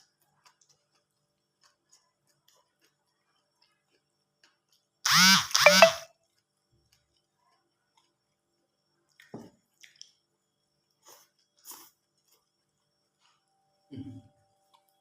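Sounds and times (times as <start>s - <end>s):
wet chewing and mouth smacking: 0.0s - 4.9s, 9.1s - 10.2s.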